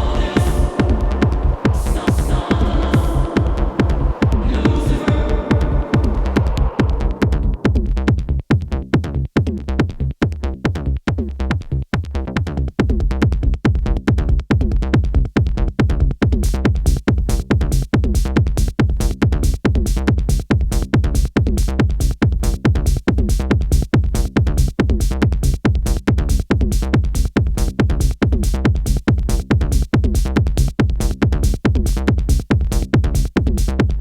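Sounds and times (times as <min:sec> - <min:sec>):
techno electronic music: 0:00.0 - 0:07.9.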